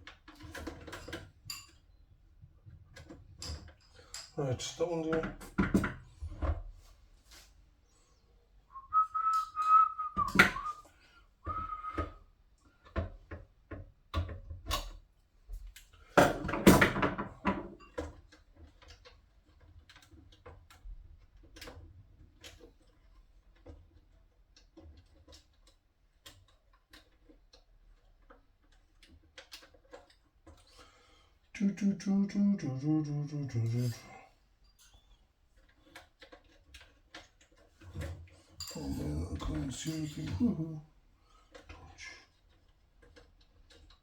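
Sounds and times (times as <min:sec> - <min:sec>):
tools and parts clattering: 0:00.2 - 0:01.9, 0:35.8 - 0:40.6
man whistling: 0:08.7 - 0:10.9, 0:11.5 - 0:12.2.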